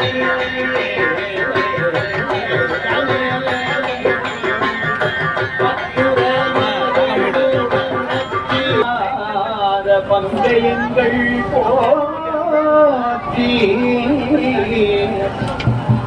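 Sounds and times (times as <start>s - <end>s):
hand drum rhythm: 0.0s - 8.9s.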